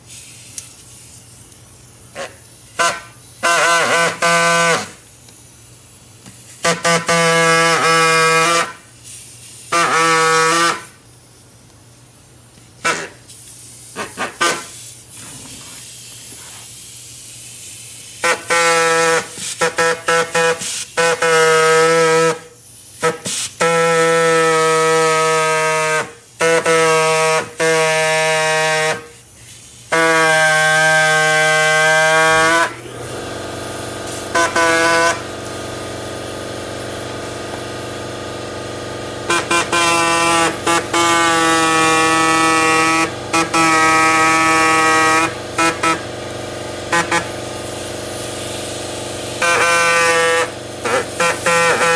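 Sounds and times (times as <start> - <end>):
power tool motor whining: 30.0 - 35.8, 49.3 - 51.9.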